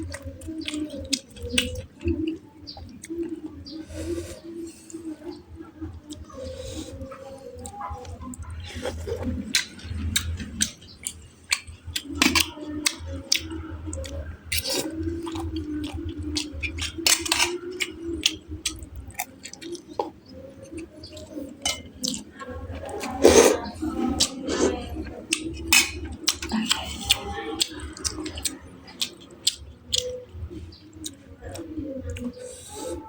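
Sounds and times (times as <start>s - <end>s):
chewing: 0.0s - 33.0s
utensils clinking on dishes: 16.7s - 17.9s, 21.6s - 22.1s, 25.6s - 27.1s.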